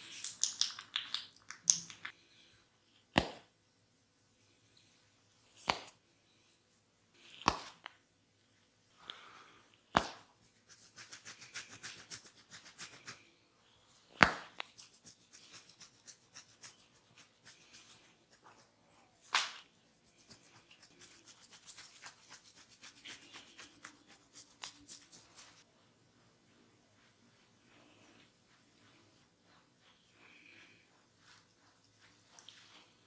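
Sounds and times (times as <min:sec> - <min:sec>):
fingers rubbing skin and hair: 0:10.0 - 0:13.3, 0:14.2 - 0:25.6.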